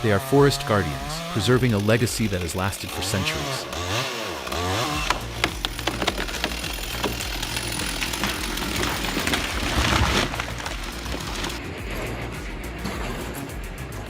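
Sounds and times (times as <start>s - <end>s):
chainsaw cutting wood: 0.0s - 11.6s
wood snapping and cracking: 1.2s - 11.6s
music with deep bass line: 3.4s - 14.0s.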